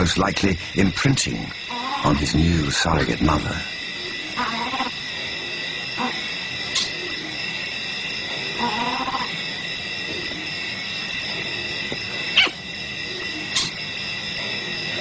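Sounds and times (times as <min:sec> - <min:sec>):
insect-like drone: 0:00.0 - 0:15.0
animal whimpering call: 0:04.2 - 0:05.0, 0:08.6 - 0:09.4, 0:12.4 - 0:12.6
animal high squeaks: 0:04.4 - 0:05.0, 0:08.6 - 0:09.4, 0:12.4 - 0:12.6.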